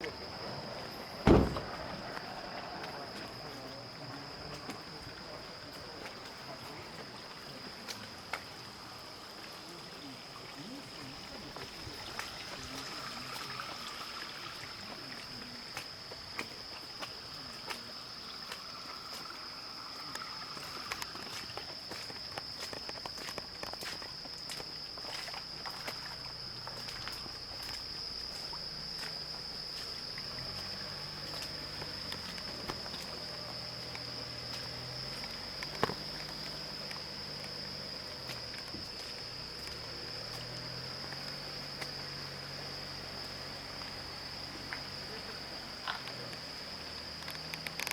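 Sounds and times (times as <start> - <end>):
crickets chirping: 0.0 - 47.9
high insect trill: 0.0 - 47.9
running water hiss: 0.0 - 47.9.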